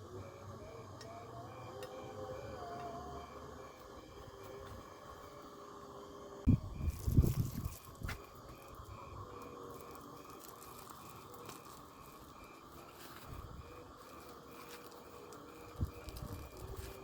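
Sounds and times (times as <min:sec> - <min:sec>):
insect chirping: 0:00.1 - 0:17.0
faint low wind rumble: 0:06.4 - 0:09.2.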